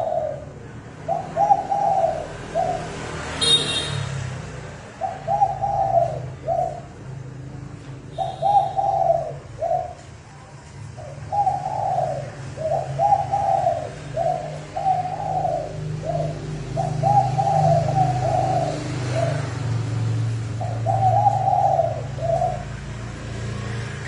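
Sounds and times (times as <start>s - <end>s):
dove cooing: 0.0s - 4.0s, 4.8s - 24.0s.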